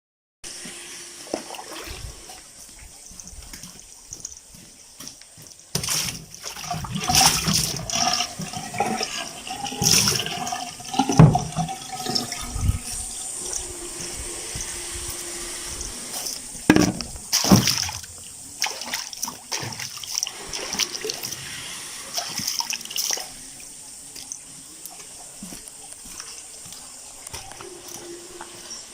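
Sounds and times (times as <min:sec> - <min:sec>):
running water: 0:00.5 - 0:28.9
water splashing on face: 0:05.7 - 0:08.6, 0:17.3 - 0:21.4.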